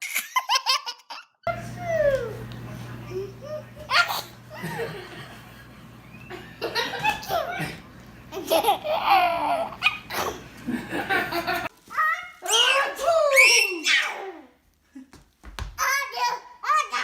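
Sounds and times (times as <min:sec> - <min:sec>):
baby laughing: 0:00.0 - 0:02.4, 0:03.0 - 0:05.4, 0:06.3 - 0:11.7
people laughing: 0:01.5 - 0:11.7.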